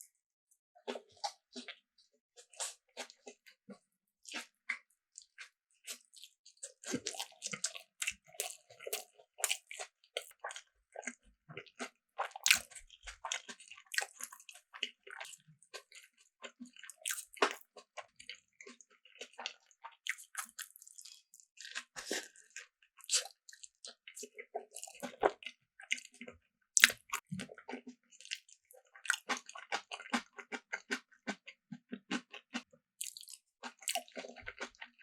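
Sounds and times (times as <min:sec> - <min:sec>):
person biting and chewing food: 0:04.3 - 0:11.1, 0:11.8 - 0:16.0, 0:16.8 - 0:18.0, 0:24.8 - 0:25.4, 0:26.8 - 0:34.9.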